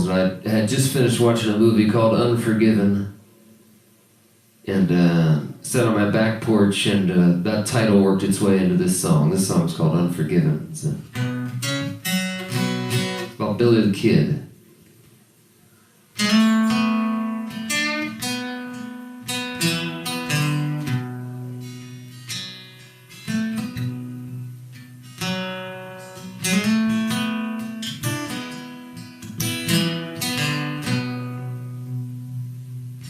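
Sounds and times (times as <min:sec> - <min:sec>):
acoustic guitar playing: 0:04.8 - 0:13.6, 0:16.1 - 0:33.0.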